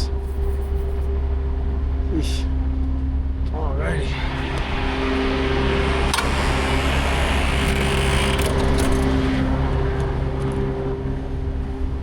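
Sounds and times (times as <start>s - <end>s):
diesel engine running: 3.8s - 12.0s.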